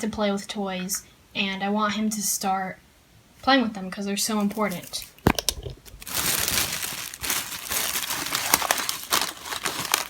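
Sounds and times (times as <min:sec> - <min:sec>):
packaging crinkling and rustling: 0:04.4 - 0:10.0.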